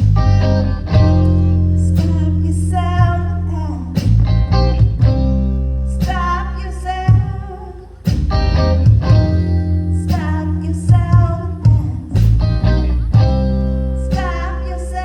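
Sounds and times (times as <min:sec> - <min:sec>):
blues band playing: 0:00.0 - 0:15.0
woman singing: 0:01.8 - 0:04.0, 0:06.0 - 0:08.0, 0:09.9 - 0:15.0.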